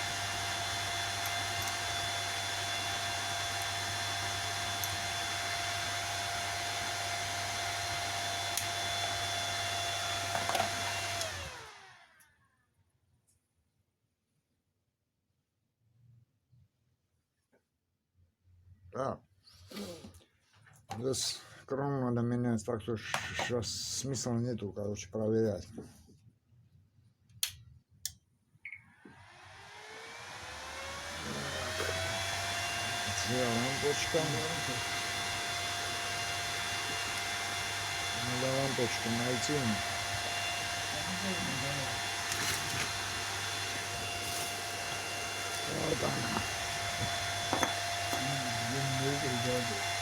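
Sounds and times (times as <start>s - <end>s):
welder cooling fan blowing: 0.0s - 11.9s, 29.2s - 50.0s.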